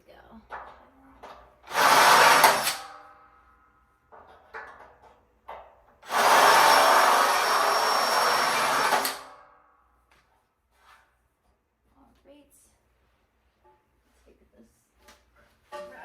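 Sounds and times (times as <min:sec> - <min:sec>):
power drill driving screw into metal: 0:01.6 - 0:03.1, 0:06.0 - 0:09.5.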